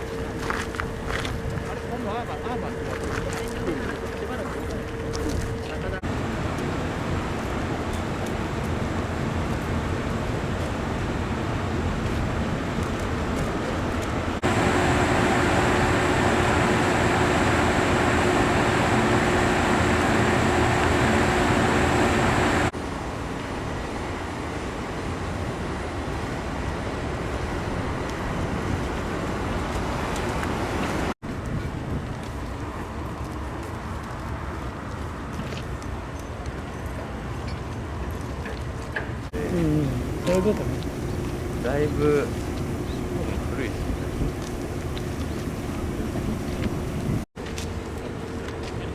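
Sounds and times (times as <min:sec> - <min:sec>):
electric train equipment humming: 0:14.0 - 0:31.1, 0:38.9 - 0:48.8
high whine: 0:14.4 - 0:24.4, 0:39.4 - 0:47.2.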